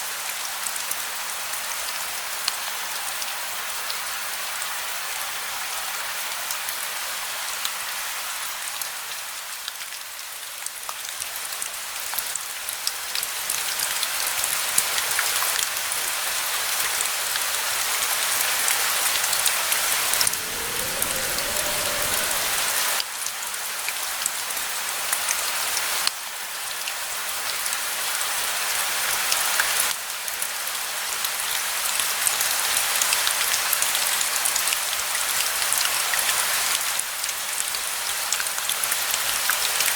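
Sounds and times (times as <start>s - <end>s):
steady rain falling: 18.9s - 23.2s
low rumble: 19.6s - 23.0s.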